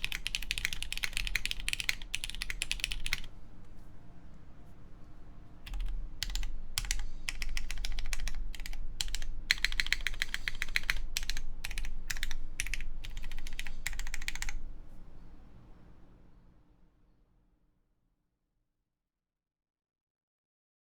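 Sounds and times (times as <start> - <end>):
mechanical keyboard typing: 0.0 - 3.3, 5.7 - 14.6.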